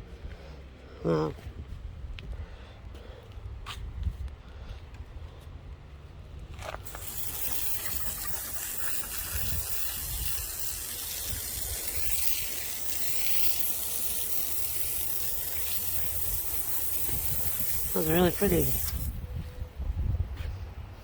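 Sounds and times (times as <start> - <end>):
water spraying from hose nozzle: 6.8 - 19.2.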